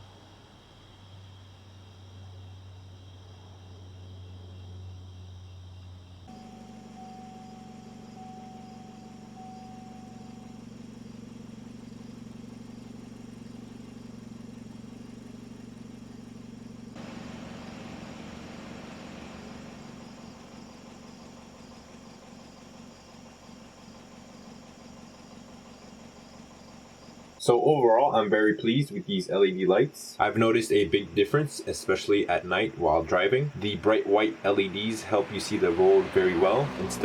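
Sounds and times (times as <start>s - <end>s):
car engine humming: 5.8s - 37.0s
broad steady hiss: 6.4s - 27.0s.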